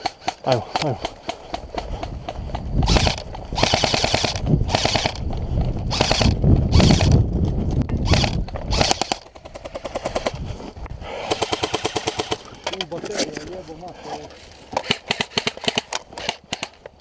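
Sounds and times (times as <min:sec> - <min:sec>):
airsoft guns firing full auto: 0:02.8 - 0:05.2, 0:08.0 - 0:10.4, 0:11.2 - 0:12.5, 0:14.8 - 0:16.8.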